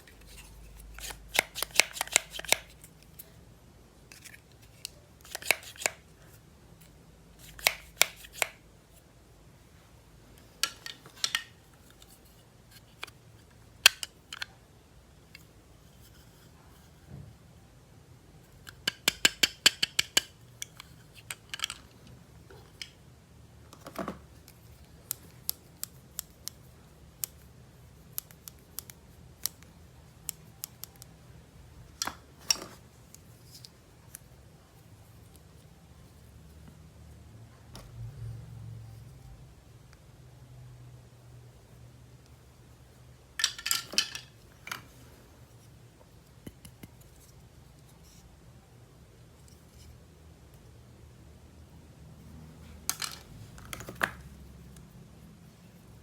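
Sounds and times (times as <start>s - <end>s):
small clicks and snips of packaging: 0.1s - 3.3s.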